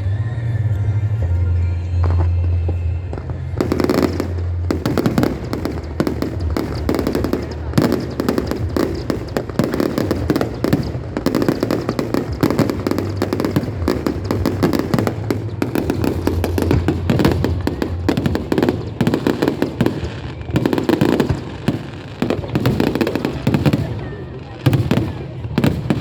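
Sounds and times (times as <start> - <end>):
low rumble: 0.0 - 20.5
fireworks bangs and crackles: 1.9 - 26.0.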